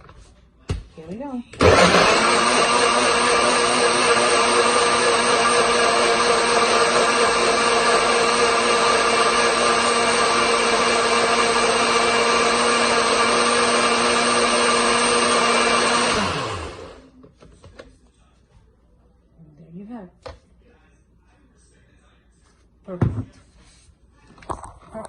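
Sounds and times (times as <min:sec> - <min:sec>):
blender motor running: 0:01.6 - 0:17.0.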